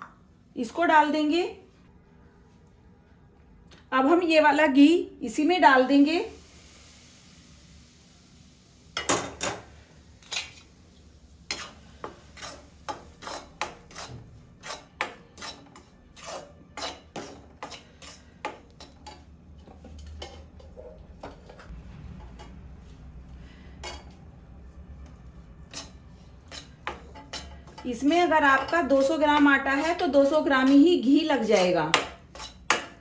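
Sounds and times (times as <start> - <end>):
metal spoon scraping pan: 11.5 - 22.6, 25.0 - 33.0.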